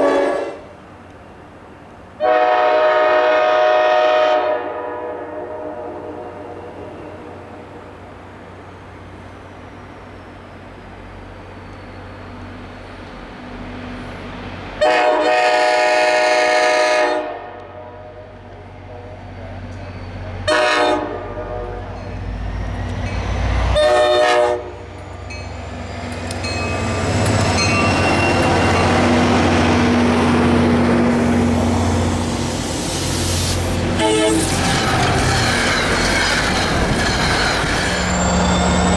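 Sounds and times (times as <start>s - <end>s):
train horn blasts: 0.0s - 0.8s, 2.2s - 7.6s, 14.8s - 18.3s, 20.4s - 22.0s, 23.7s - 24.9s, 33.9s - 34.5s
train rumble and wheel noise: 0.0s - 38.9s.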